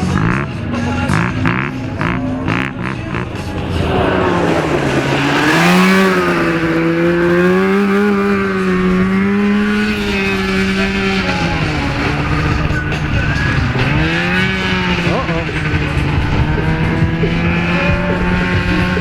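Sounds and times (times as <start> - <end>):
racing lawn mower engine revving: 0.0 - 19.0.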